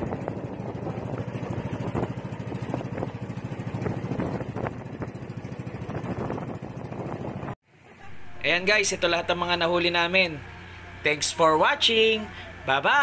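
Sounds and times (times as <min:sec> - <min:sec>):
small engine running: 0:00.0 - 0:13.0.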